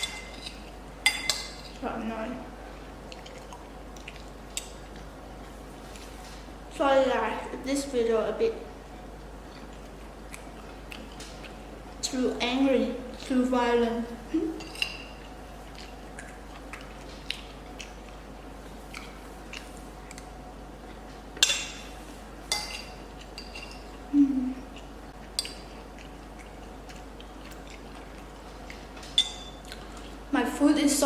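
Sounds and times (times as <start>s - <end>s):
cutlery clinking against dishes: 14.6s - 15.2s.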